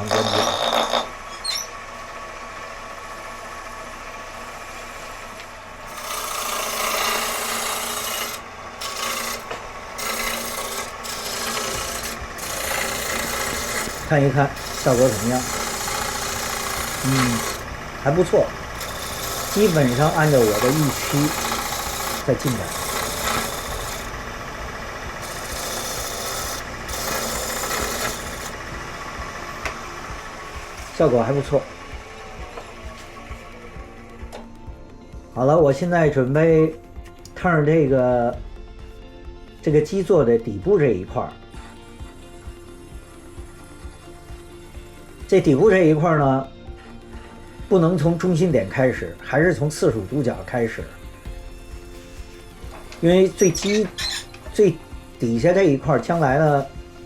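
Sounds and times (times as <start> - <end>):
gouge cutting wood on lathe: 0.0 - 1.8, 4.8 - 33.7, 52.6 - 56.8
turning tool scraping wood: 0.0 - 1.8, 5.8 - 31.8, 50.7 - 57.0.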